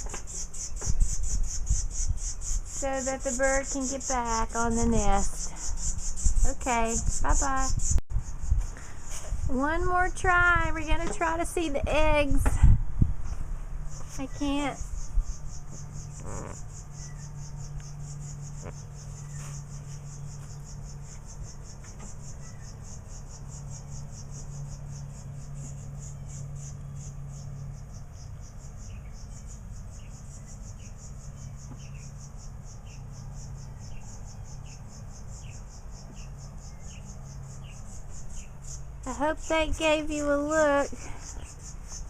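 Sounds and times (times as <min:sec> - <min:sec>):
insects trilling: 0:00.0 - 0:12.2, 0:13.3 - 0:42.0
low steady hum: 0:00.0 - 0:42.0
bird chip calls: 0:13.9 - 0:42.0.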